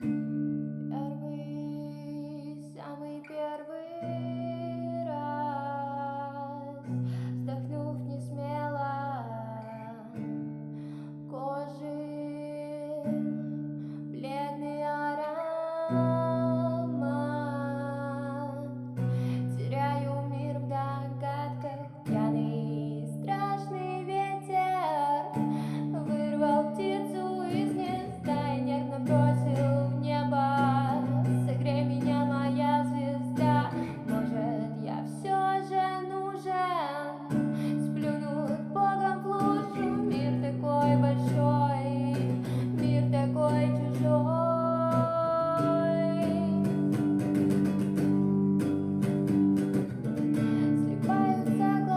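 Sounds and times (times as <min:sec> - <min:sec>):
person singing: 0:14.2 - 0:48.2, 0:49.6 - 0:51.9
strummed acoustic guitar: 0:15.9 - 0:36.6, 0:37.2 - 0:51.9.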